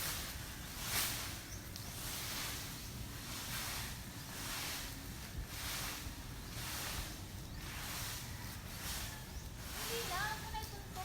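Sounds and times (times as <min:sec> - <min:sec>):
rake scraping over grass: 0:00.0 - 0:11.0.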